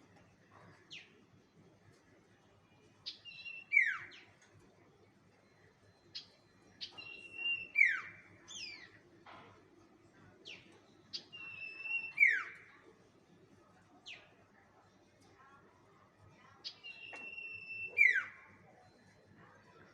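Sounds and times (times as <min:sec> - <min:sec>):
whistled bird lure call: 0:06.2 - 0:08.8, 0:10.5 - 0:12.6, 0:16.7 - 0:18.4.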